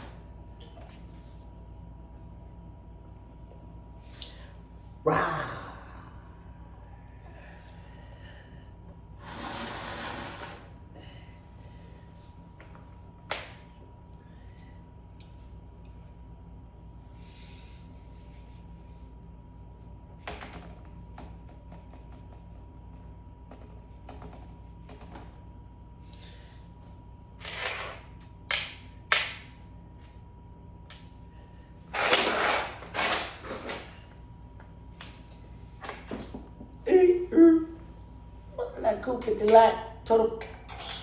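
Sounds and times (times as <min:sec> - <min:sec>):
steady low hum: 0:00.0 - 0:41.0.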